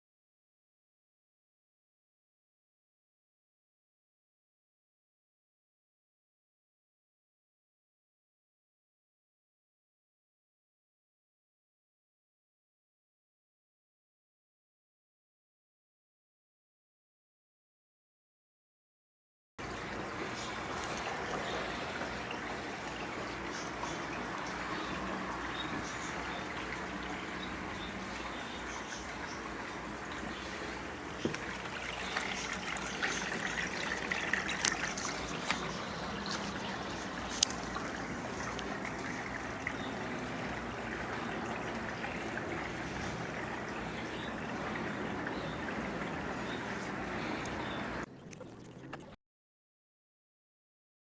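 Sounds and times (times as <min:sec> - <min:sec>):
aquarium water trickling: 0:19.6 - 0:49.2
wave maker pump running: 0:19.6 - 0:49.2.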